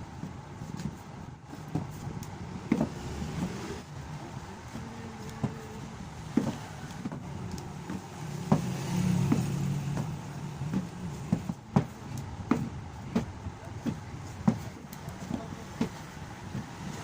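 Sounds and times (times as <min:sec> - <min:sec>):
sharp knocks and taps: 0:01.7 - 0:03.6, 0:06.3 - 0:16.7.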